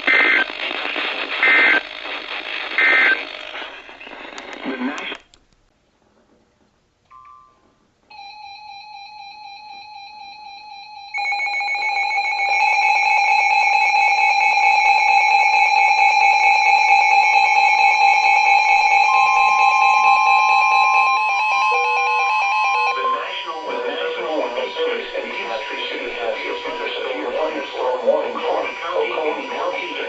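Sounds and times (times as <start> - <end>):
higher tone: 19.0 - 28.8.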